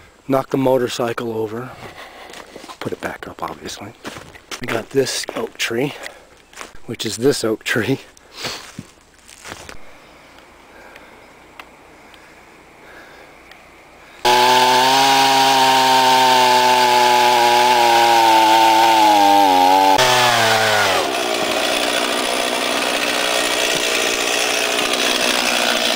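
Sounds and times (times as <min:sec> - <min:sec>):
chainsaw cutting wood: 0:14.2 - 0:25.9.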